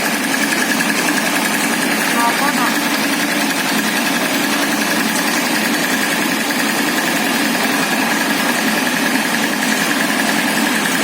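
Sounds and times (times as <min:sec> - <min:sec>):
grader engine running: 0:00.0 - 0:11.0
high whine: 0:01.9 - 0:03.4.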